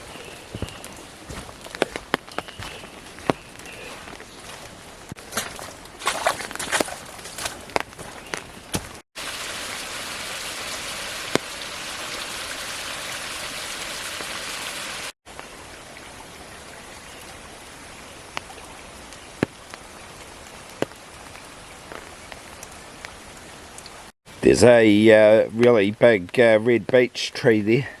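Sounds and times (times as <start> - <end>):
steady rain in forest: 0.0 - 27.8
sharp raindrop ticks: 15.3 - 24.1.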